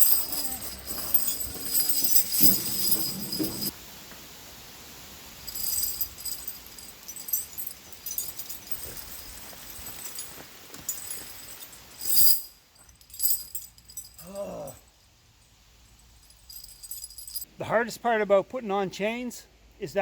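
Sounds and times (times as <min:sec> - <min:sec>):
metal chains clinking and jangling: 0:00.0 - 0:03.8, 0:05.4 - 0:15.0, 0:15.9 - 0:17.5.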